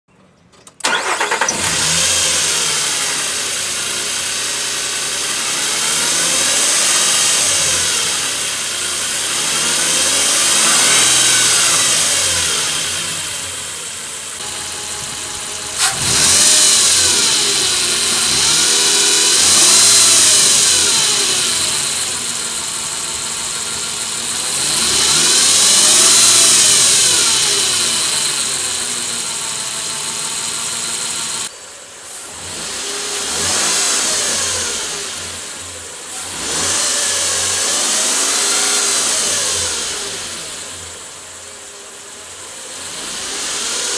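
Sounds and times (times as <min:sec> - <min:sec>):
engine starting and revving: 0:00.7 - 0:41.4, 0:42.0 - 0:43.9
engine whine: 0:00.8 - 0:31.6.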